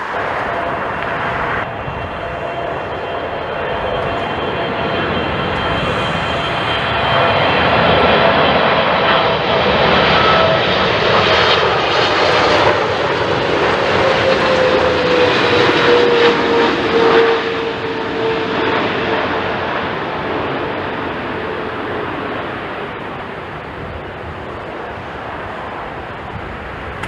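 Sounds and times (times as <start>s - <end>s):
jet airliner flying past: 0.0s - 27.0s.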